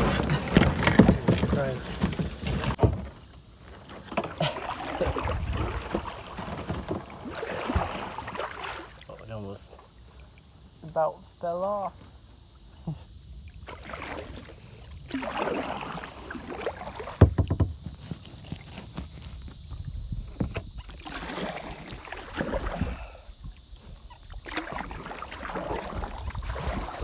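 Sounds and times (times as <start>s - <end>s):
kayak paddle splashing water: 0.0s - 10.5s, 13.1s - 27.0s
hard knock: 17.2s - 17.8s.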